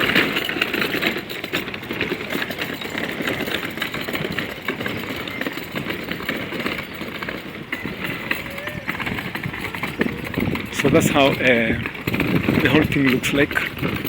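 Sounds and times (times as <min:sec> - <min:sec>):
engine idling: 0:00.0 - 0:14.0
small knocks and clatters: 0:00.0 - 0:14.0.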